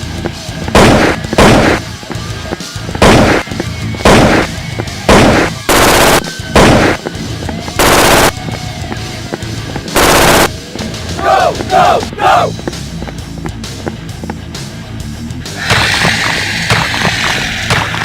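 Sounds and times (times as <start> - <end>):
background music: 0.0 - 18.0
machine-gun bursts: 5.1 - 7.0, 7.8 - 8.4, 10.0 - 10.5.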